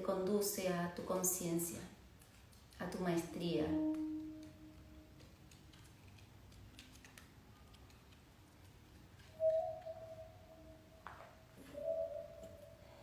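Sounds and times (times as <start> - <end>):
soft background music: 2.8 - 13.0.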